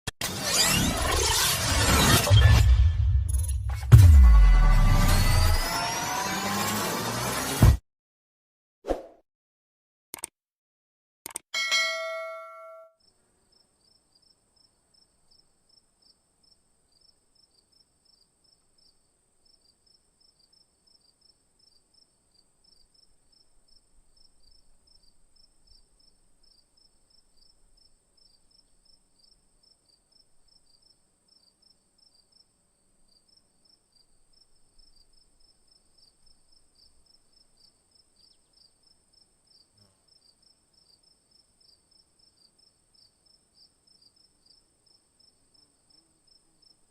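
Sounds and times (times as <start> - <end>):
bell tone: 11.6 - 12.9
crickets chirping: 13.0 - 46.9.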